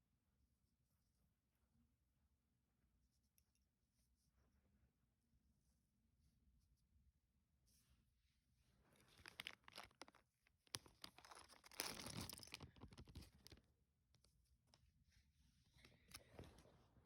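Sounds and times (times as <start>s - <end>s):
plastic packaging crinkling: 9.1s - 13.6s.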